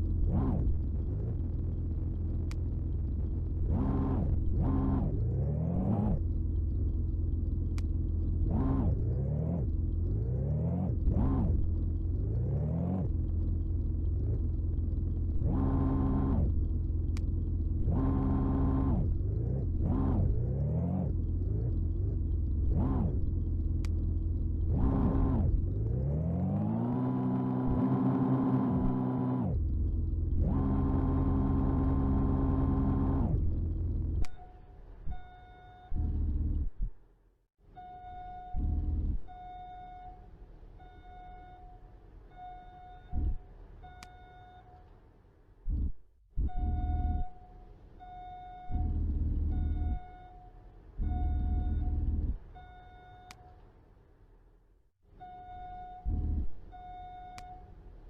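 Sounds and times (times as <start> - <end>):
engine revving: 0.0 - 34.4.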